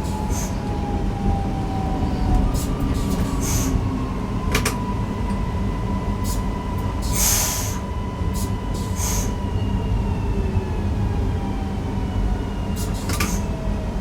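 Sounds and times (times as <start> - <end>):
wheels rumbling on track: 0.0 - 14.0
air hiss: 0.1 - 0.6, 2.6 - 3.8, 6.2 - 7.8, 8.4 - 9.4, 12.8 - 13.5.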